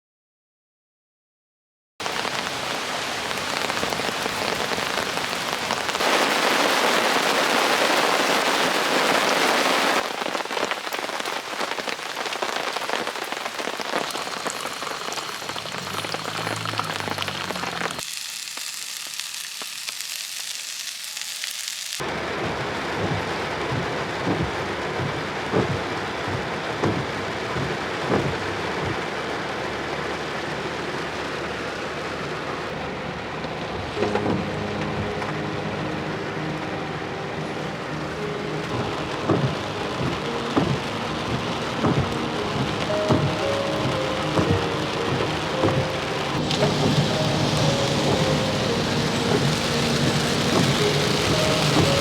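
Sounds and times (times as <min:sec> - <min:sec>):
heavy rain falling: 0:02.0 - 0:20.2, 0:21.3 - 0:52.0
low thuds of heavy drops: 0:22.5 - 0:29.3.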